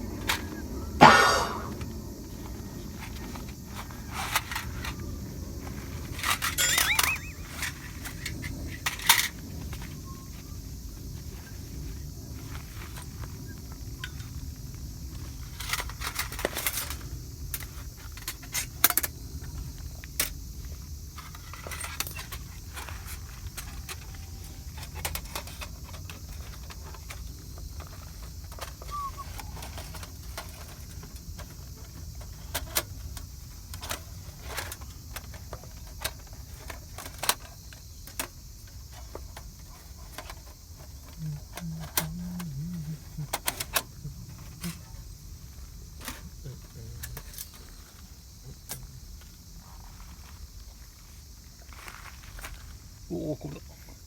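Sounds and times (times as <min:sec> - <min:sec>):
metal objects clinking: 0:01.0 - 0:01.8, 0:06.2 - 0:07.8.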